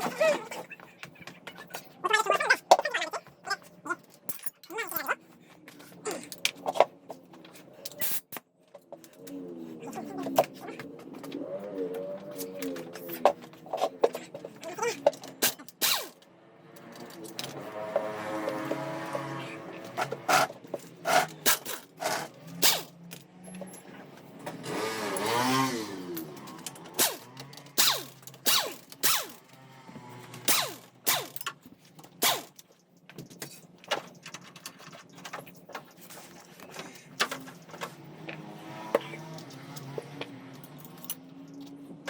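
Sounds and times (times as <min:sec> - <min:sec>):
metal tools clinking: 0:01.6 - 0:06.8, 0:39.2 - 0:41.9.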